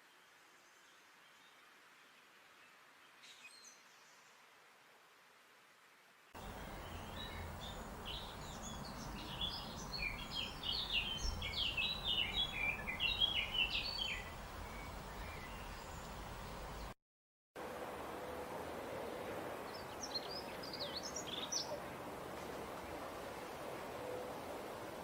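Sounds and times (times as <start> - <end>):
outdoor background hiss: 0.0 - 17.0, 17.6 - 25.0
songbird chirping: 6.4 - 17.0, 19.7 - 21.9.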